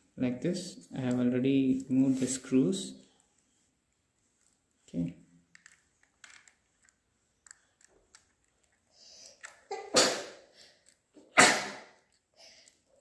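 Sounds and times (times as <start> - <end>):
faint plastic clicks and scrapes: 3.1 - 9.7, 10.6 - 11.2, 12.0 - 13.0.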